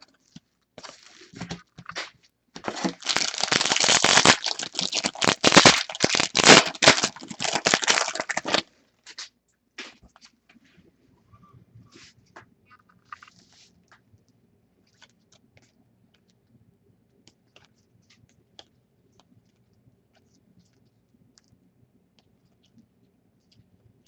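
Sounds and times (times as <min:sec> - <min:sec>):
foil wrapper tearing and crinkling: 0:00.8 - 0:08.7.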